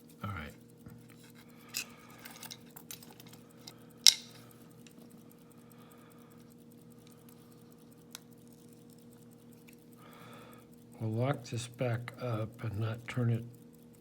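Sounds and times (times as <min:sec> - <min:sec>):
metallic clicks of lockpicking tools: 0:00.0 - 0:05.5, 0:06.3 - 0:10.9
sharp clack of padlock: 0:04.1 - 0:04.5.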